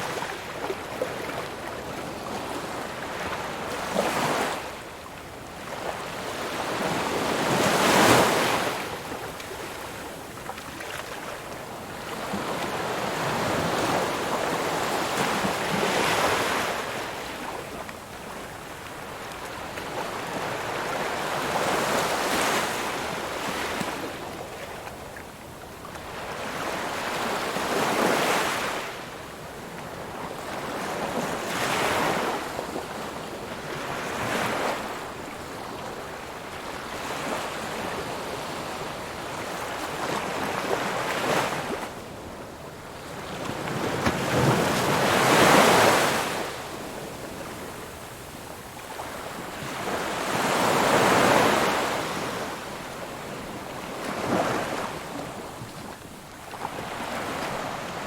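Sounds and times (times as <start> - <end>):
ocean waves breaking on shore: 26.1 - 58.0.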